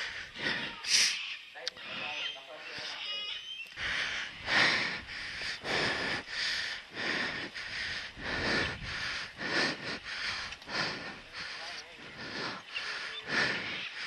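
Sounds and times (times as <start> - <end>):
person breathing hard: 0.0 - 1.2, 3.7 - 14.0.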